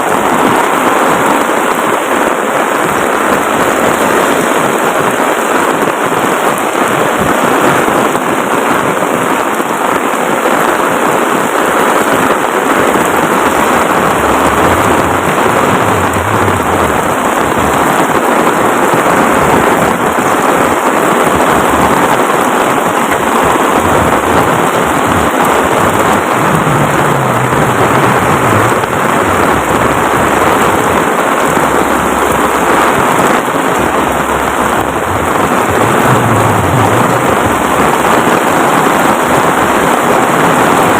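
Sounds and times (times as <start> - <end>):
heavy rain pouring: 0.0 - 40.9
low rumble: 13.4 - 18.0, 23.1 - 38.5.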